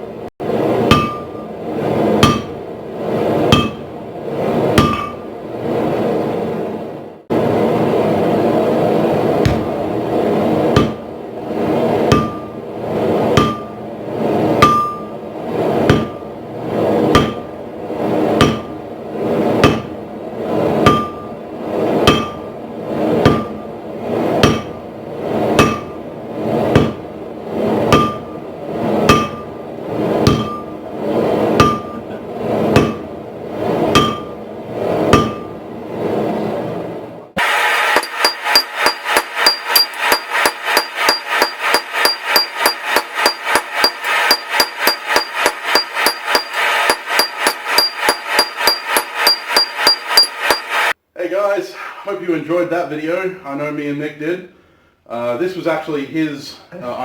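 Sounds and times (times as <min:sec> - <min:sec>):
steady rushing noise: 0:00.0 - 0:51.0
sledgehammer blows on steel: 0:00.4 - 0:05.4, 0:09.1 - 0:35.6, 0:37.4 - 0:51.0.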